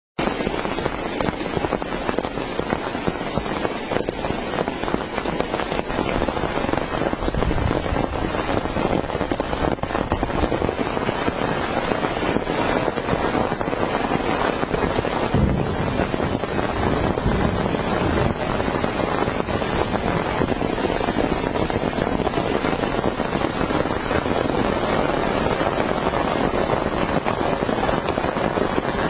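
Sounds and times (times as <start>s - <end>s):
heavy rain falling: 0.2s - 29.0s.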